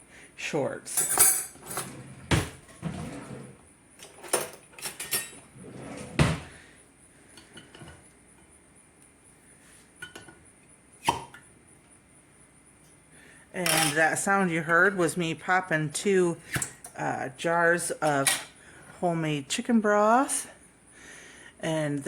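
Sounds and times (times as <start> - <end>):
glass and metal lids clinking: 1.0 - 2.2, 4.0 - 6.0, 13.6 - 14.0
jar lids popping open: 11.0 - 11.4.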